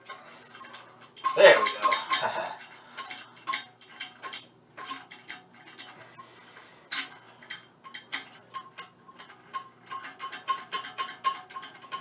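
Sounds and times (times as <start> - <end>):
metallic clicks of nut turning: 6.9 - 12.0.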